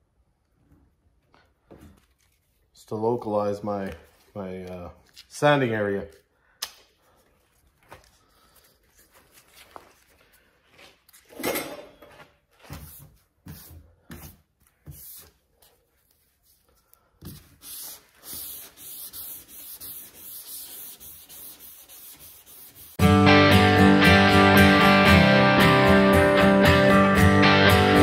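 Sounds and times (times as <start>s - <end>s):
sanding block knocks and handling: 17.2s - 23.0s
hand sanding scrubbing strokes: 17.3s - 23.0s.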